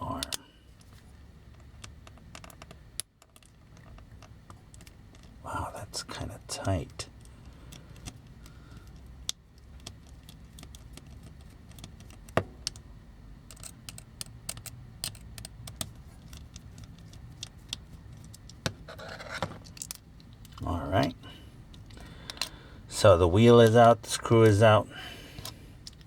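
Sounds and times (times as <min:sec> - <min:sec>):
tools clicking on plastic toy parts: 0:07.2 - 0:12.8, 0:13.5 - 0:18.7.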